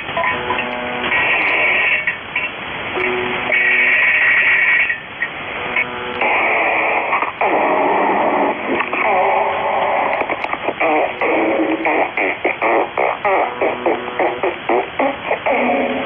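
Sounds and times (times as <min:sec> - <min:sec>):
rough radio noise: 0:00.0 - 0:16.0
guitar music over two-way radio: 0:05.6 - 0:07.3.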